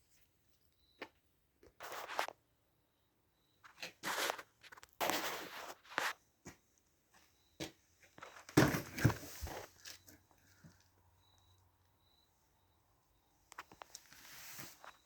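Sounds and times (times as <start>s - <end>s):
hands rustling and scraping: 13.6s - 15.0s.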